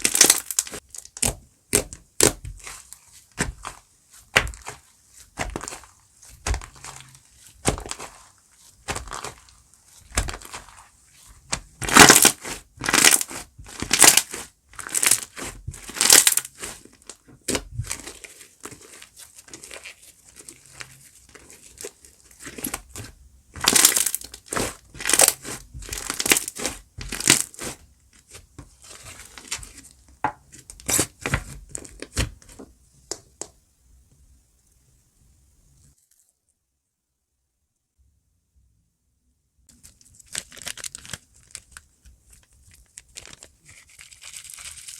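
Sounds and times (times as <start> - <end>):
slime crackling when squeezed: 11.5 - 19.9.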